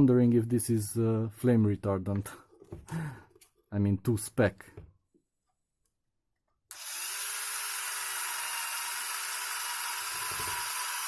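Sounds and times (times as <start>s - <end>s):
electric power drill whining: 6.7s - 11.0s.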